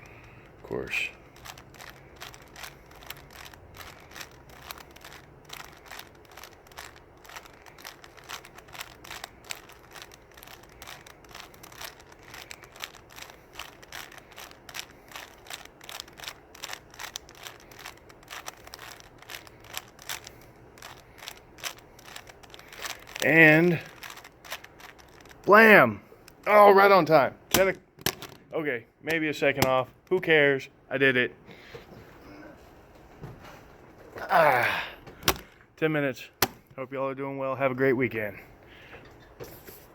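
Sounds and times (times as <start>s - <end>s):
puzzle cube clicking and clacking: 0.0s - 30.2s, 35.2s - 35.5s.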